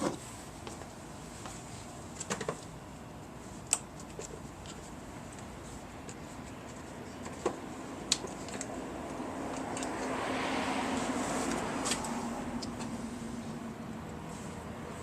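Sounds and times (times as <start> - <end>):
parts clicking and tapping: 5.4 - 10.2
broad rushing noise: 8.7 - 15.0.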